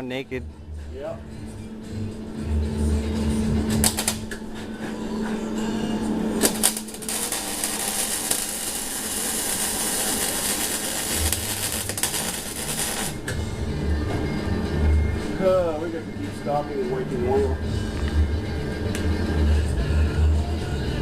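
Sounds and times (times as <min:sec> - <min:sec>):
welder arc crackling: 0:03.7 - 0:04.4, 0:06.4 - 0:13.4.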